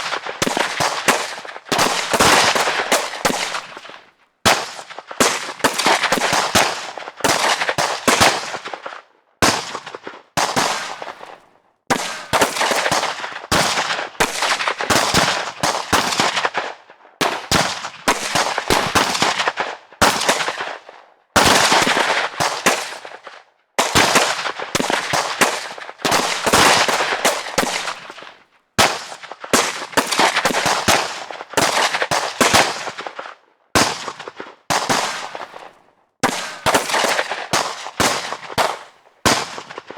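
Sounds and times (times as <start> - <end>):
automatic gunfire bursts: 0.0 - 3.9.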